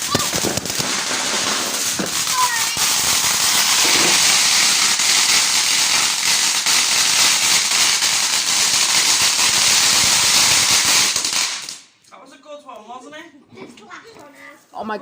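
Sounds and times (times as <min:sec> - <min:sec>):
firework crackling: 0:00.0 - 0:11.9.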